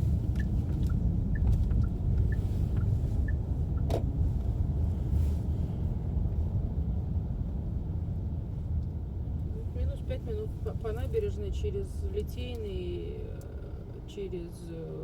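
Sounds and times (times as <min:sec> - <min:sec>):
car driving rumble from inside: 0:00.0 - 0:15.0.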